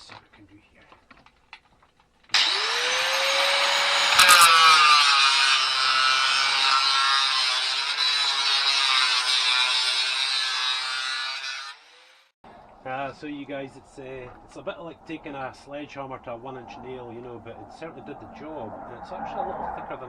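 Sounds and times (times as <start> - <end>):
angle grinder cutting metal: 2.3 - 12.3.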